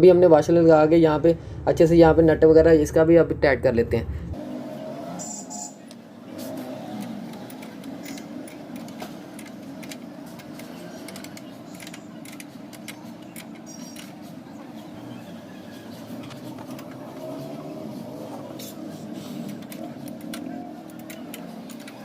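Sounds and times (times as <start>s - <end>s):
spanner clicking on metal nuts: 6.9s - 14.2s.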